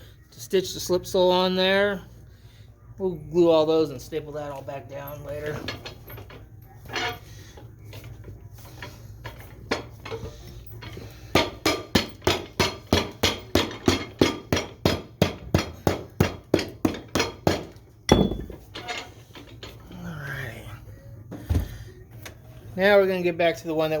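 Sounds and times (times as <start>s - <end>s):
hammer striking leather boot: 11.4s - 18.6s.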